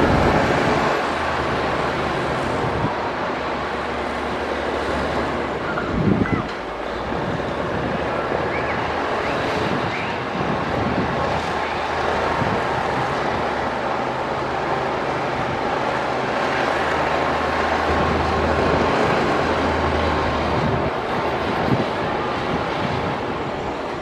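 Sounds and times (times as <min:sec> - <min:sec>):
heavy diesel machinery running: 0:00.0 - 0:24.0.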